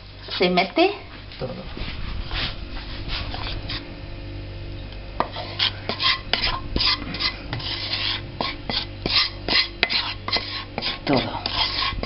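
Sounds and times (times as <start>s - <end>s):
spoon scraping sticky mixture in pan: 3.1s - 3.9s, 5.2s - 12.0s.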